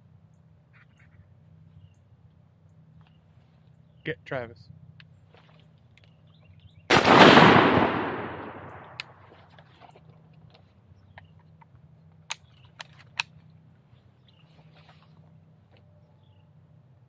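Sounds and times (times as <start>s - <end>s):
shotgun blast with echo: 6.9s - 9.0s.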